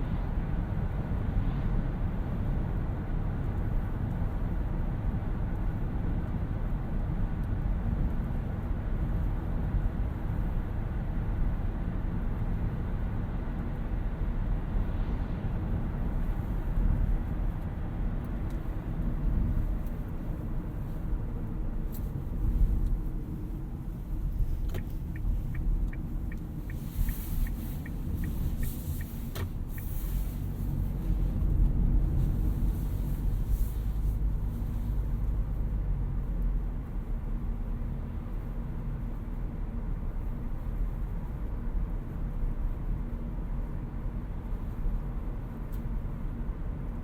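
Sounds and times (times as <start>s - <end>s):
car driving low rumble: 0.0s - 47.0s
turn indicator ticking: 24.2s - 30.6s.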